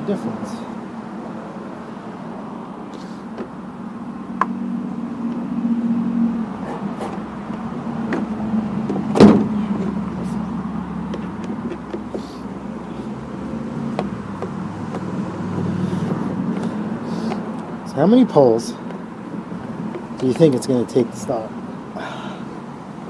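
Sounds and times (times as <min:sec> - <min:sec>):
loud knock: 0:09.1 - 0:09.6.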